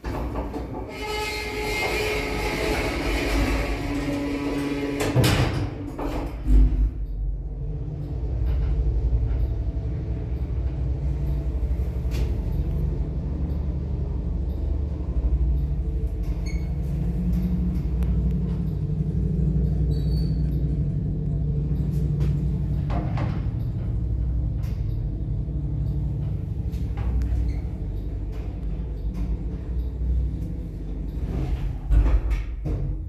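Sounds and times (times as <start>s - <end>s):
elevator rumble and hum: 0.0s - 33.0s
faint squeaks: 10.3s - 22.8s, 24.6s - 31.8s.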